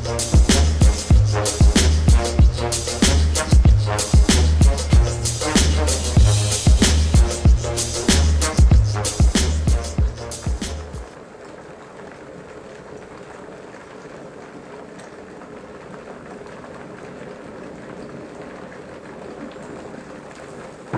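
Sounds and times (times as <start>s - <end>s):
kettle water boiling: 11.1s - 20.9s.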